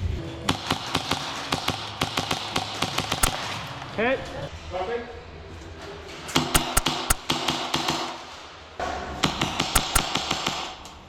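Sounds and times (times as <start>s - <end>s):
airsoft gunshots: 0.6s - 3.6s, 6.4s - 8.1s, 9.6s - 10.7s.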